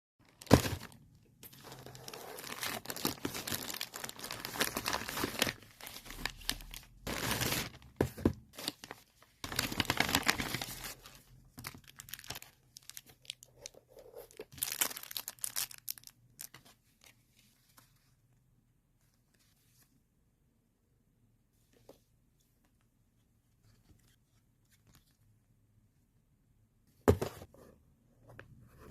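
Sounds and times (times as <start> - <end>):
plastic packaging crinkling and tearing: 0.2 - 7.8, 8.6 - 13.8, 14.4 - 16.6.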